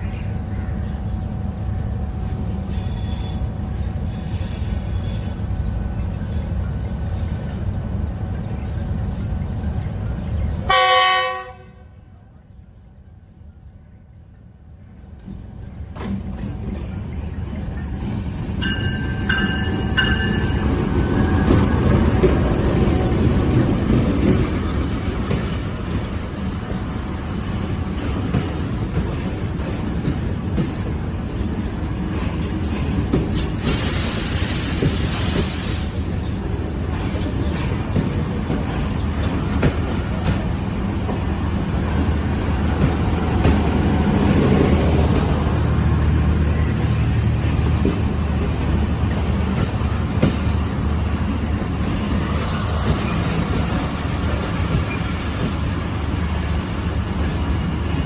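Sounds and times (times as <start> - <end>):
train rumbling: 0.0 - 58.0
locomotive horn blast: 10.7 - 12.0.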